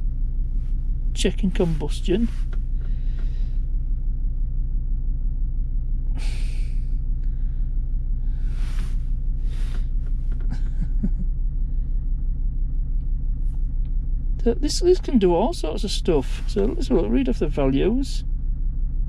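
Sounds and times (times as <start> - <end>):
car engine idling: 0.0 - 19.0
breathy hisses: 6.2 - 6.8.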